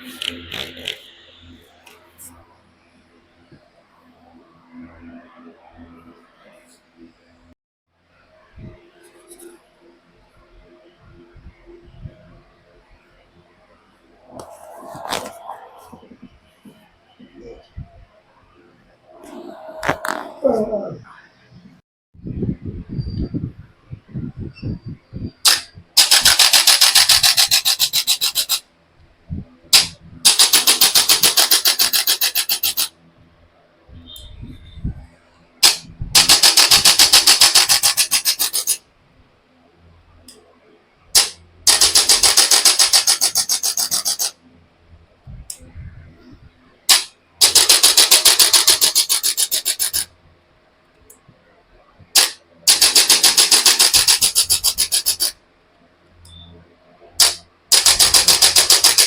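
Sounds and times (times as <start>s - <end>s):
sharp click: 25.4s - 28.6s, 29.8s - 32.9s, 35.6s - 38.8s, 41.2s - 44.3s, 46.9s - 50.1s, 52.2s - 55.4s, 57.2s - 59.0s.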